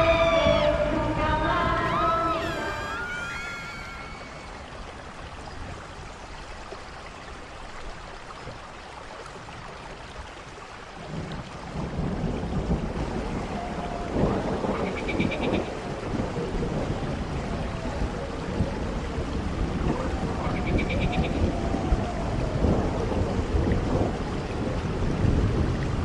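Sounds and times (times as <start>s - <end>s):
steady rain: 0.0s - 26.0s
low thunder rumble: 11.1s - 26.0s.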